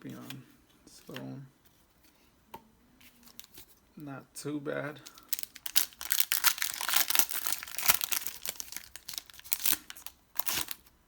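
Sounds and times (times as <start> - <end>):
foil wrapper crinkling and tearing: 5.0 - 10.9.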